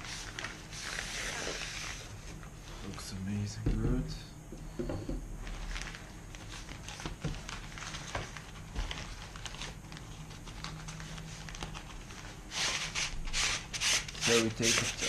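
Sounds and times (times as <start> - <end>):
loud rubbing rustle: 0.0 - 2.2.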